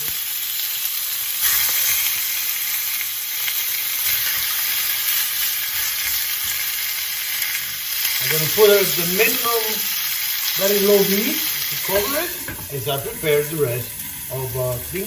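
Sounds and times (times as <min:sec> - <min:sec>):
quails sizzling in oil: 0:00.0 - 0:15.0.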